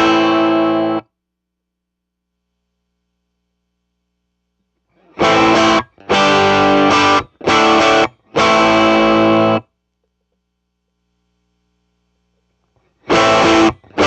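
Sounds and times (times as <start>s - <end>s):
distorted electric guitar chords: 0.0s - 1.1s, 5.0s - 9.7s, 13.0s - 14.0s.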